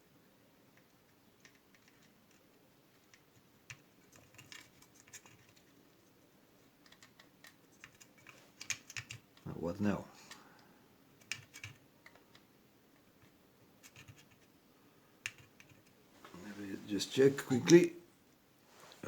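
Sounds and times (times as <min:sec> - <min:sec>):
small clicks and taps of toy parts: 0:00.7 - 0:05.8, 0:06.7 - 0:09.5, 0:10.2 - 0:14.5, 0:15.2 - 0:16.0.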